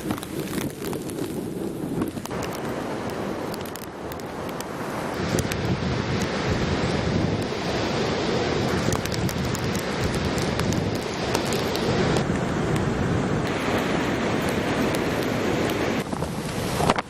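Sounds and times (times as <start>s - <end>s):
wind buffeting microphone: 0.0s - 17.0s
small ticks: 3.4s - 5.7s, 8.8s - 12.3s.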